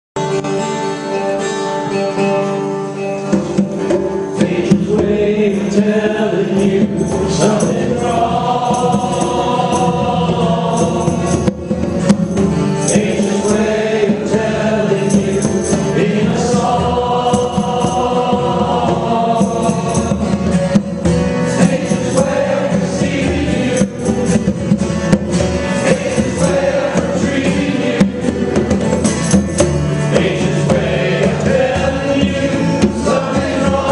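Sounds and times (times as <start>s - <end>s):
live band playing: 0.2s - 33.9s
congas: 3.2s - 33.9s
steady drum pattern: 3.4s - 33.9s
person singing: 4.4s - 11.4s, 12.8s - 20.2s, 30.1s - 33.9s.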